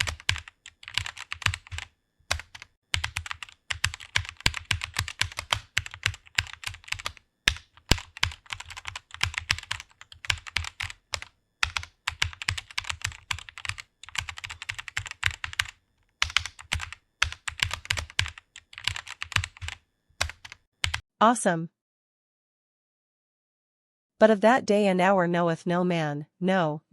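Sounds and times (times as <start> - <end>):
fast typing on keyboard: 0.0 - 21.0.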